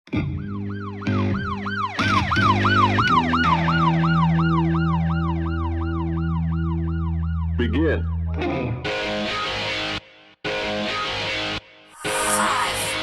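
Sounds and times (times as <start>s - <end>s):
low synth chords and bass: 3.6s - 9.0s.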